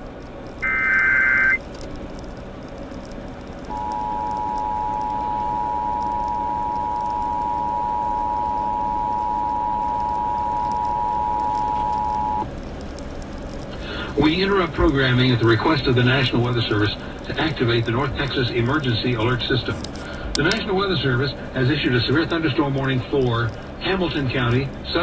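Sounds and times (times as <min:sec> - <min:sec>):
rapid digital data tones: 0:00.6 - 0:01.6
two-tone alarm: 0:00.6 - 0:01.6, 0:03.7 - 0:12.5.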